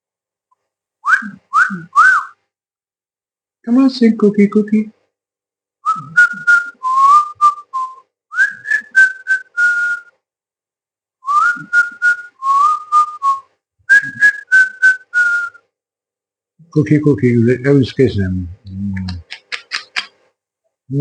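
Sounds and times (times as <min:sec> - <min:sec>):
person whistling a tune: 0:01.0 - 0:02.4, 0:05.8 - 0:10.1, 0:11.2 - 0:15.6.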